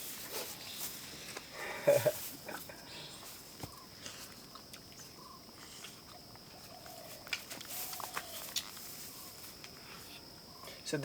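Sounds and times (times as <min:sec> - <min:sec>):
insects trilling: 0:00.0 - 0:11.0
soft chirps: 0:02.7 - 0:10.8.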